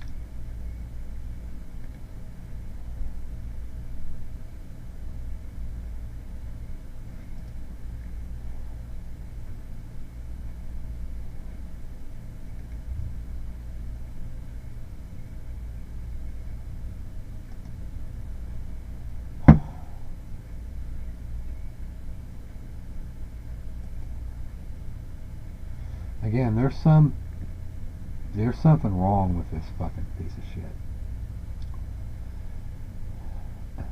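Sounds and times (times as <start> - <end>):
low background hum: 0.0 - 33.9
sharp knock: 19.4 - 19.8.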